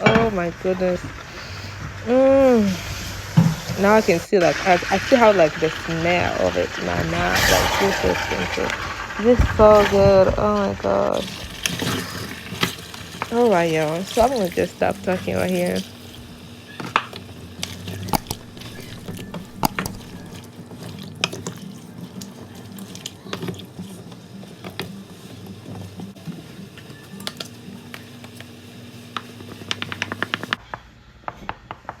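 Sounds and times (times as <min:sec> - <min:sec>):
utensils clinking against a pot: 0:16.7 - 0:24.0.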